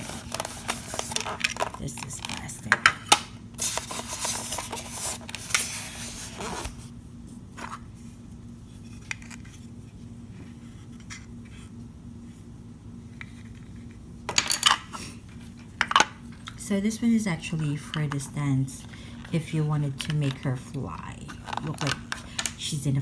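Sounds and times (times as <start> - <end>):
packaging rustling: 0.0 - 2.5, 3.6 - 6.9.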